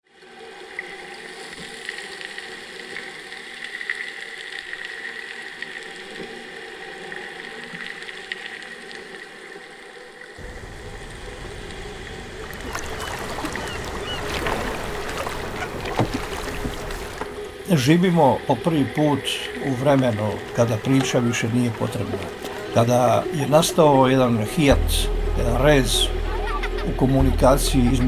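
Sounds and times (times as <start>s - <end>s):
rumbling water and wind: 5.7s - 28.0s
layered tonal drone: 17.3s - 28.0s.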